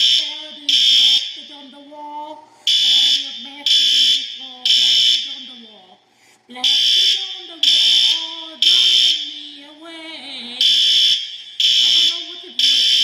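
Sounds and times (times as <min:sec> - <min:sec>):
fire alarm horn blasts: 0:00.0 - 0:01.5, 0:02.7 - 0:05.4, 0:06.6 - 0:09.4, 0:10.6 - 0:13.0.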